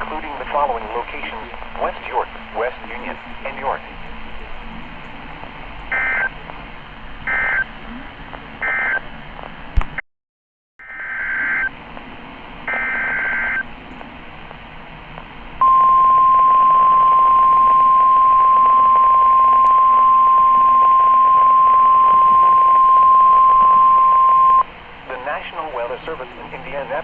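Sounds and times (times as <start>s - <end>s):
receiver hiss: 0.0s - 10.0s, 10.8s - 27.0s
steady warning alarm tone: 5.9s - 6.3s, 7.3s - 7.7s, 12.7s - 13.7s, 15.6s - 24.6s.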